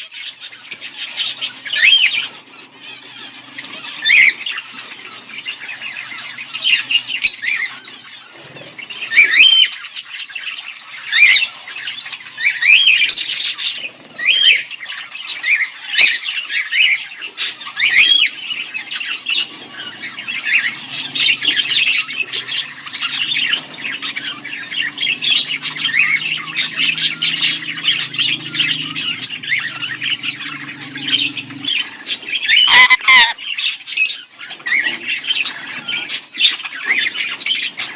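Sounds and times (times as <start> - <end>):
budgerigars chirping and chattering: 0.0 - 37.9.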